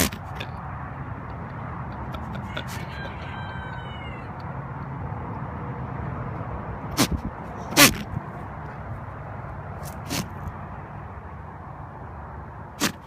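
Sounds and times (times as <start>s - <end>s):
steady background noise: 0.0s - 13.0s
high-pitched animal call: 2.4s - 4.4s.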